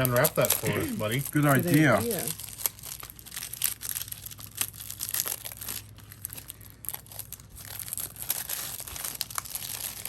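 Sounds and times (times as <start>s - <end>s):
plastic wrap crinkling and tearing: 0.0s - 10.0s.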